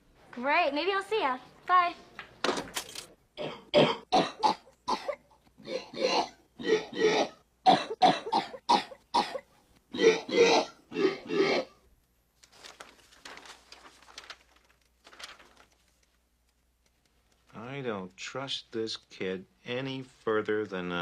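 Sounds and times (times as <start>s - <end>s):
sampled coughs: 3.4s - 11.8s
faint clicks and rustling: 12.0s - 17.7s.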